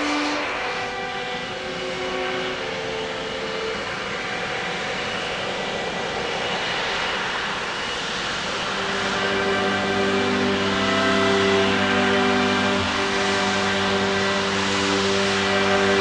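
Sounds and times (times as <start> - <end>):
airliner engines rushing: 0.0 - 16.0
faint steady tones: 0.0 - 16.0.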